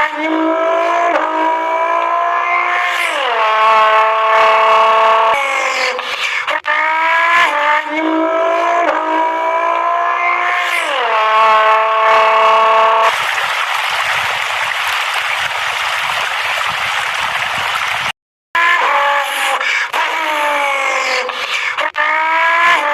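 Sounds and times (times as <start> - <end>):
car engine revving: 0.0 - 5.7, 6.6 - 13.2
steady rushing noise: 13.1 - 18.1.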